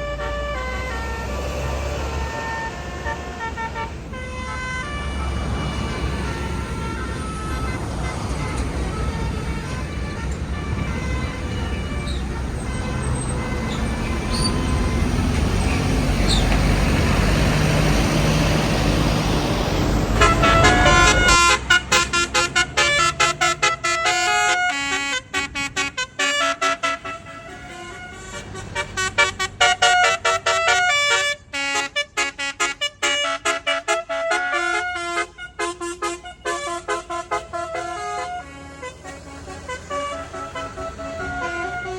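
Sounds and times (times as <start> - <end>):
bus engine rumbling: 0.0 - 41.9
musical horn playing a tune: 0.0 - 41.9.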